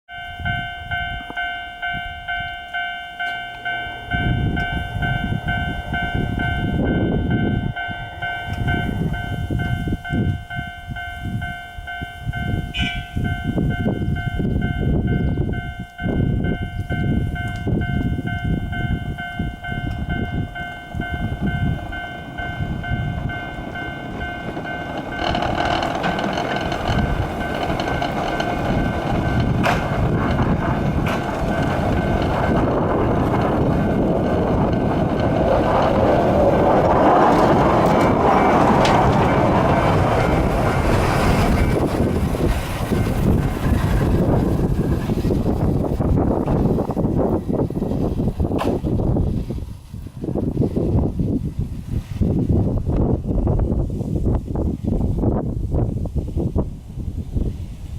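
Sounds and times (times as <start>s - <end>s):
level-crossing warning bell ringing: 0.1s - 47.7s
low rumble: 16.2s - 54.5s.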